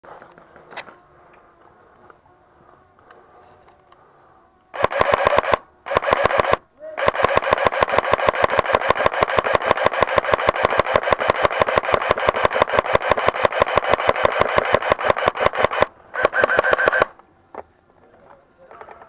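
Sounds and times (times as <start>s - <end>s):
airsoft gun firing full auto: 4.8s - 17.2s.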